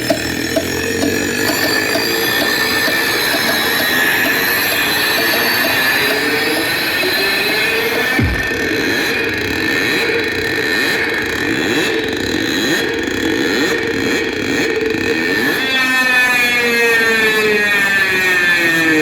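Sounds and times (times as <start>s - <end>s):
droning electronic tones: 0.0s - 12.5s.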